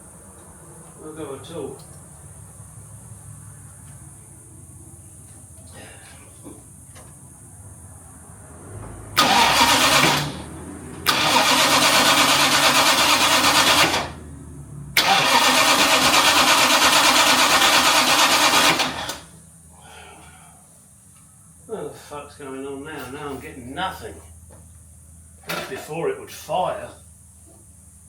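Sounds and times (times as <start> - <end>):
engine cranking on starter motor: 9.2 - 14.2, 14.9 - 19.4.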